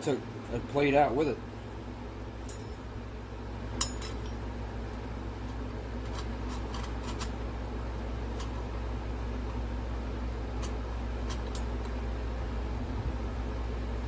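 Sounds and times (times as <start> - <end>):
metal parts clinking and clicking: 2.5 - 2.8, 3.8 - 4.4, 6.0 - 7.4, 10.6 - 11.7.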